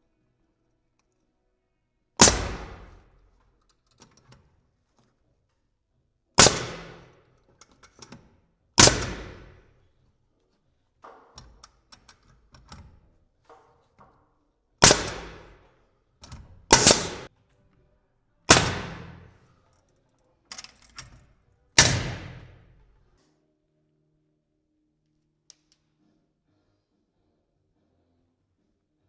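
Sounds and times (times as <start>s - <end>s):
nail gun bangs: 2.2s - 3.2s, 6.4s - 7.3s, 8.8s - 9.7s, 14.8s - 15.7s, 16.7s - 17.3s, 18.5s - 19.4s, 21.8s - 22.9s.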